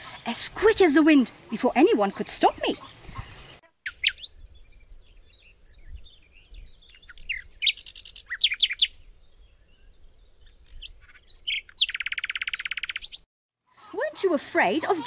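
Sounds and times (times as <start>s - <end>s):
bird trill: 1.5s - 13.2s
birds chirping and whistling: 1.6s - 13.3s.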